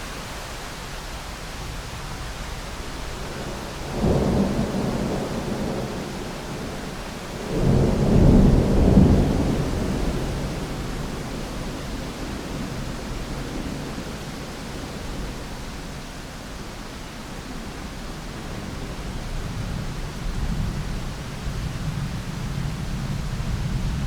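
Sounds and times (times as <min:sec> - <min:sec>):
steady rain hiss: 0:00.0 - 0:24.0
distant thunder rumble: 0:02.9 - 0:15.5.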